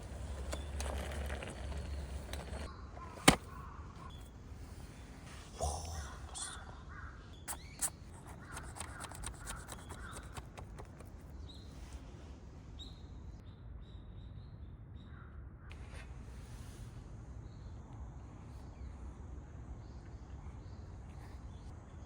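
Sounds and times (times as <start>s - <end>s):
sharp clicks: 7.5s - 11.2s.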